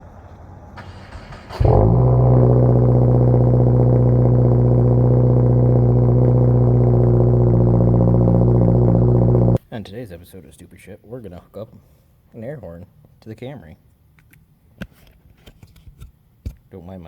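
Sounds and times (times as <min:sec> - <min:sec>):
car air horn blast: 0:01.6 - 0:09.6.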